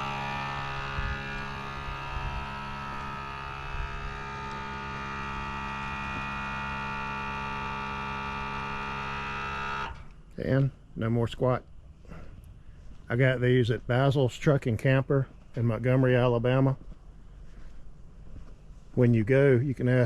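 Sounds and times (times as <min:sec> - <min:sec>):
air compressor humming: 0:00.0 - 0:10.2.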